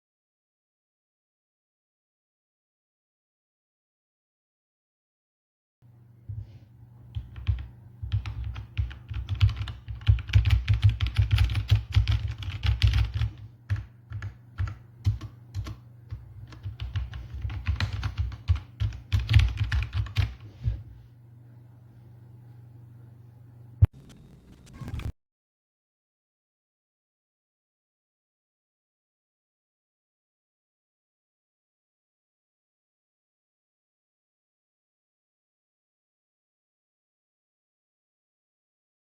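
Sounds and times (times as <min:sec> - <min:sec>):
low steady hum: 0:05.8 - 0:25.1
fast typing on mechanical keyboard: 0:07.1 - 0:20.4.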